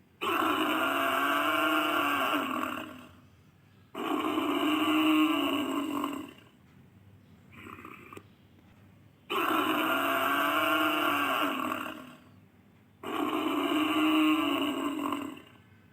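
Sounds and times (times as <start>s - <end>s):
buffalo calls: 9.3s - 12.4s, 13.0s - 15.6s.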